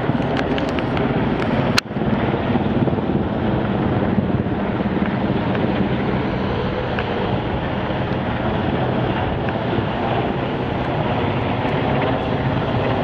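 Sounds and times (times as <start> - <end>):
helicopter flying overhead: 0.0 - 13.0.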